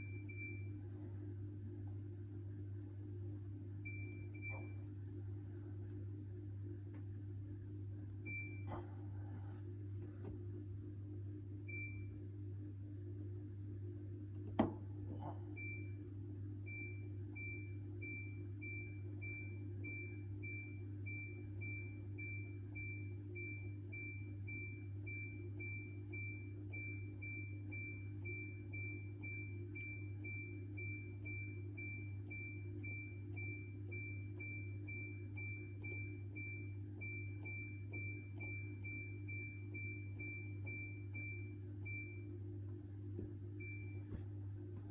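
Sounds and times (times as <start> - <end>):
washing machine beeping: 0.0 - 1.1, 3.8 - 6.4, 7.8 - 10.2, 11.6 - 12.3, 14.2 - 44.9
low hum: 0.0 - 21.7.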